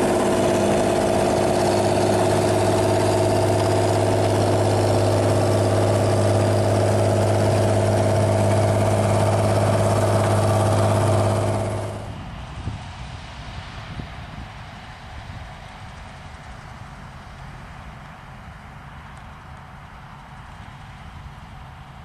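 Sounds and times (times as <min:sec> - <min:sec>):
combine harvester engine humming: 0:00.0 - 0:12.6.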